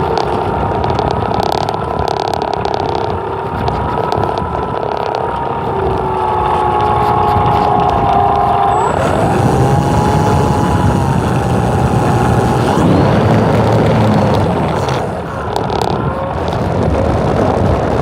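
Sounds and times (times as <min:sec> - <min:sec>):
wind rumble on microphone: 0:00.0 - 0:18.0
propeller aircraft engine running: 0:05.4 - 0:16.3.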